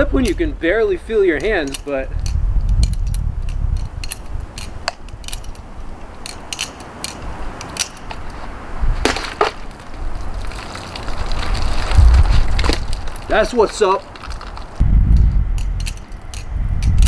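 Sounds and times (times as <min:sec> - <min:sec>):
wind rumbling on microphone: 0:00.0 - 0:17.0
butterfly knife clicking: 0:01.4 - 0:08.2.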